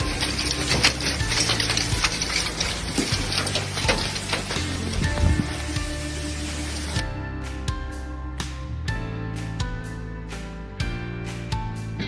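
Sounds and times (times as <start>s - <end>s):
hail and rain pelting down: 0.0s - 7.0s
background music with steady tones: 0.0s - 12.0s.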